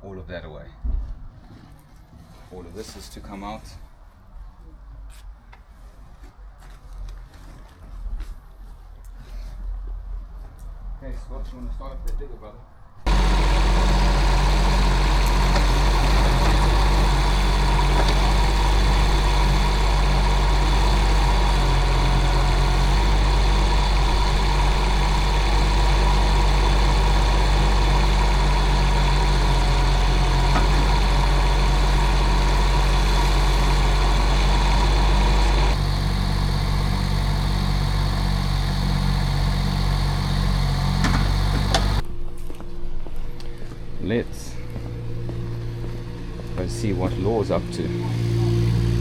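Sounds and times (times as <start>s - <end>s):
digger engine running: 13.0s - 42.1s, 44.7s - 49.0s.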